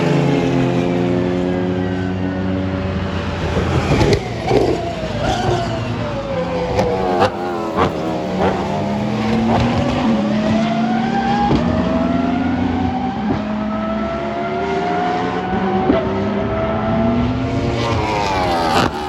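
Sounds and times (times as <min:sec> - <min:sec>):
racing car engine accelerating: 0:00.4 - 0:19.0
sharp throttle blips: 0:06.6 - 0:10.7, 0:17.8 - 0:19.0.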